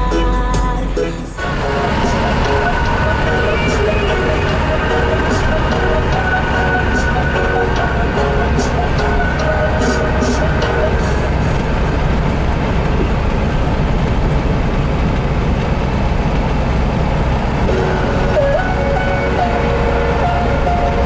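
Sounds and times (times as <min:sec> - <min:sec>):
reggae music: 0:00.0 - 0:12.8, 0:17.7 - 0:21.0
vehicle engine and road rumble: 0:00.0 - 0:21.0.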